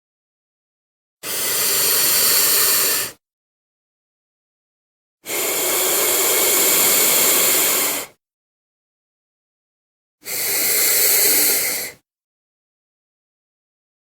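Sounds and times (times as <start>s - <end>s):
giant lizard hissing: 1.2s - 3.2s, 5.3s - 8.2s, 10.2s - 12.0s.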